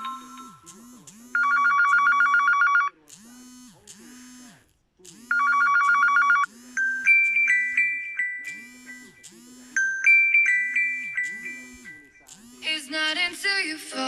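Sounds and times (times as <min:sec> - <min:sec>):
chiming ringtone: 0:00.0 - 0:00.8, 0:01.4 - 0:02.9, 0:05.3 - 0:12.6
electronic telephone ringtone trill: 0:00.0 - 0:03.0, 0:05.3 - 0:12.4.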